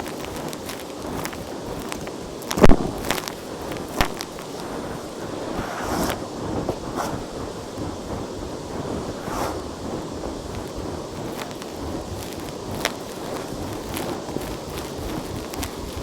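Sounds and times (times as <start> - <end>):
debris crackling up nozzle: 0.0 - 16.0
vacuum cleaner running: 3.0 - 16.0.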